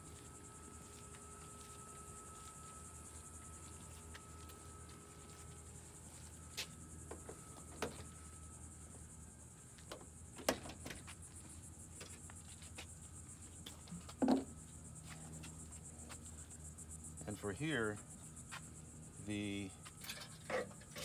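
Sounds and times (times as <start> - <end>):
crickets chirping: 0.0 - 21.0.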